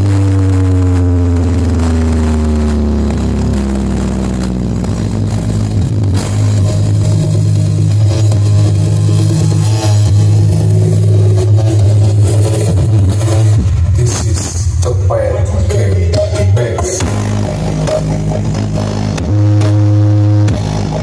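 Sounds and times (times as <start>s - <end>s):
loud bass-heavy music: 0.0s - 21.0s.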